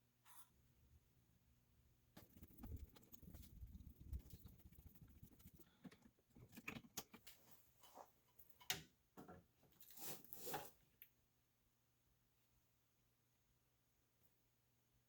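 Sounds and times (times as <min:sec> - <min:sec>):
faint rustling and scratching: 0:02.2 - 0:08.6.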